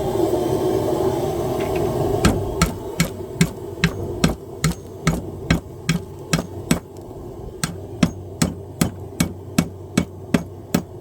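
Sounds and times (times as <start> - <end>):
hammer striking hot steel: 1.6 - 7.0, 7.6 - 11.0.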